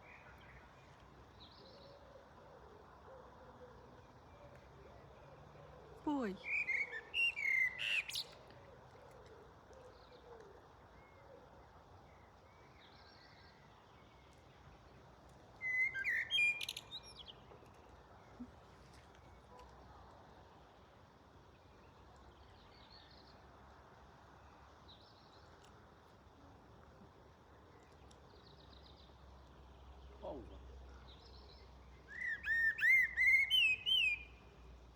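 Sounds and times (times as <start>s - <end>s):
songbird singing: 6.1s - 8.4s, 15.6s - 18.6s, 27.8s - 34.5s.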